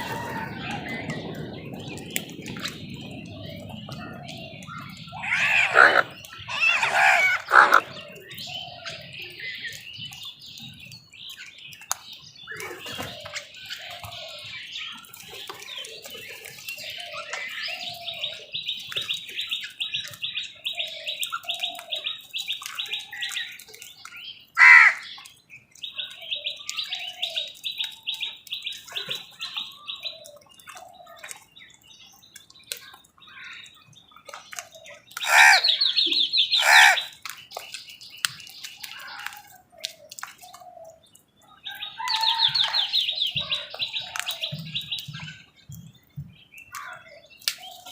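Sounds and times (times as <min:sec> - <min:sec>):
crows cawing: 0:05.1 - 0:08.0, 0:24.6 - 0:25.1, 0:35.2 - 0:35.8, 0:36.5 - 0:37.2.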